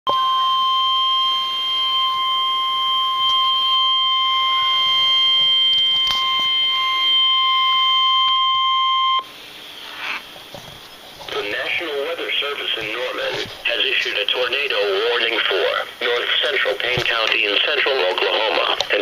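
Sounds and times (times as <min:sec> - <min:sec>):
steady high alarm tone: 0:00.1 - 0:10.3.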